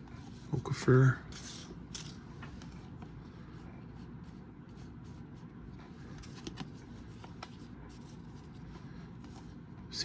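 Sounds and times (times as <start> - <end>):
low background hum: 0.0 - 10.0
cards sliding and ticking: 5.8 - 9.6.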